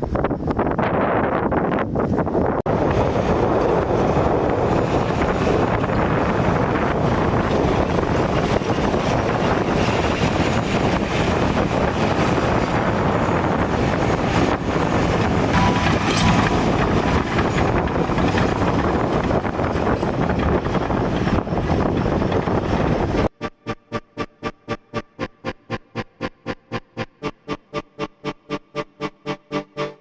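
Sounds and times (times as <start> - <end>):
heavy diesel machinery running: 2.7 - 23.3.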